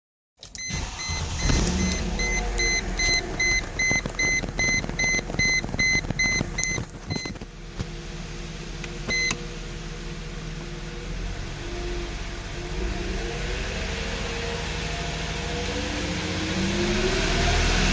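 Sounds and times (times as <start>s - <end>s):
car engine starting and idling: 0.4s - 17.9s
dashboard warning chime beeping: 0.6s - 7.4s, 9.0s - 9.4s.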